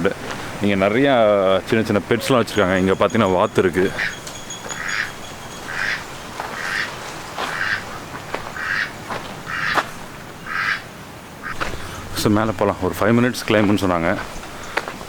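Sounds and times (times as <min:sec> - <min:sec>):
duck quacking: 0:06.6 - 0:06.9, 0:07.5 - 0:07.9, 0:08.6 - 0:08.9, 0:09.5 - 0:10.8.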